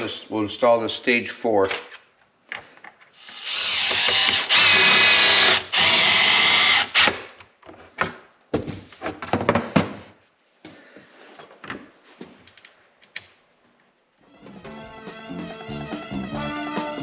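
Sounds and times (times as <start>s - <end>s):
power drill whining: 3.2s - 7.4s.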